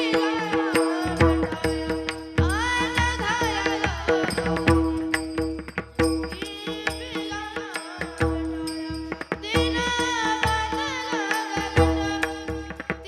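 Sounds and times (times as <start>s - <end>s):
child singing: 0.0s - 5.0s, 6.4s - 13.0s
sharp percussion strokes: 0.0s - 13.0s.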